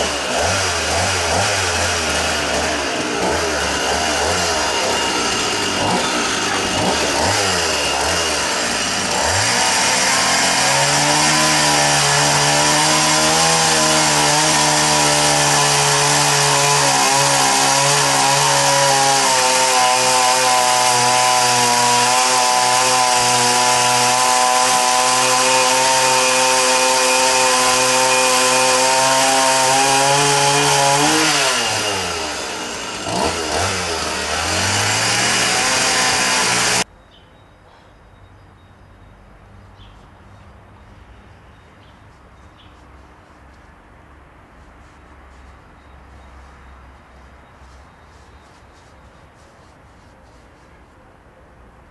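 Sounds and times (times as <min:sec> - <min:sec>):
chainsaw cutting wood: 0:00.0 - 0:36.9.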